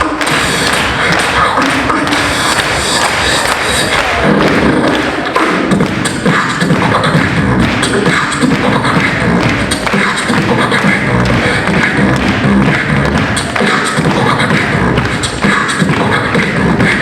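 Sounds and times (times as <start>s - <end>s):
beatboxing: 0.0s - 17.0s
hummed bass line: 3.8s - 17.0s.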